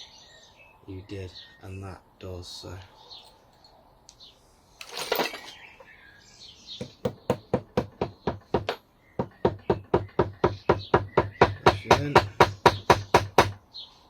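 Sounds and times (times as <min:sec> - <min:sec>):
tools rattling: 0:04.8 - 0:05.9, 0:08.4 - 0:08.8.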